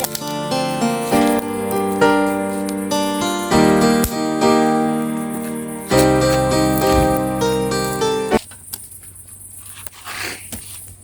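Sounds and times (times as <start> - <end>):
piano music: 0.0 - 8.4.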